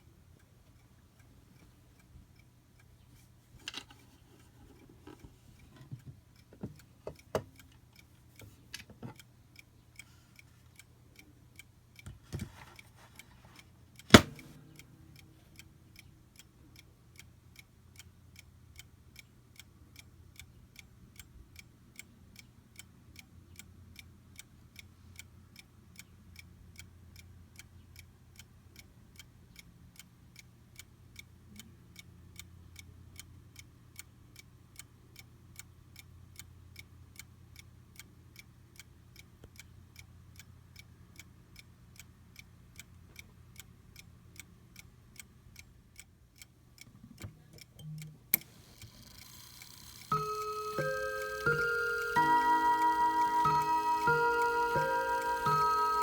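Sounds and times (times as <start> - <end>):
mantel clock ticking: 0.0 - 56.0
irregular clicks and knocks: 3.6 - 7.8, 14.0 - 14.8.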